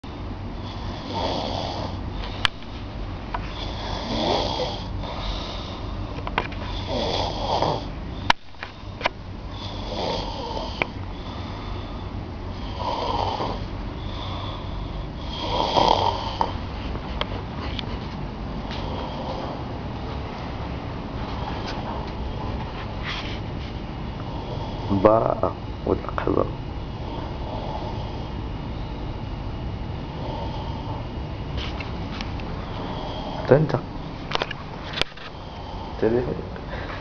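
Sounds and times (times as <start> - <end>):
person snoring: 0.6 - 2.0, 3.4 - 6.0, 6.7 - 8.0, 9.5 - 16.6, 18.7 - 19.7, 24.3 - 25.6, 27.0 - 28.4, 30.0 - 31.1, 32.6 - 33.8.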